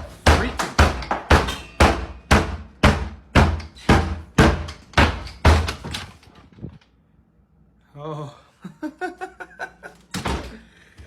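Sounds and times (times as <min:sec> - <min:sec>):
heavy knocking thuds: 0:00.0 - 0:06.2.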